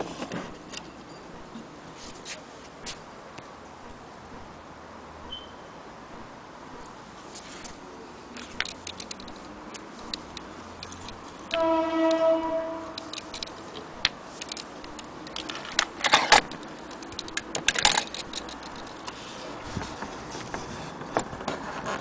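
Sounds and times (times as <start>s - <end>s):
clicks and rattles: 7.6s - 11.6s, 12.9s - 22.0s.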